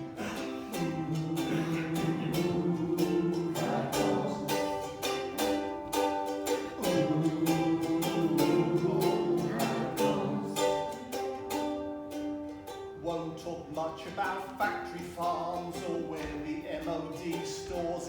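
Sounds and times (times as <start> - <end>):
acoustic strings strummed: 0.0 - 18.0.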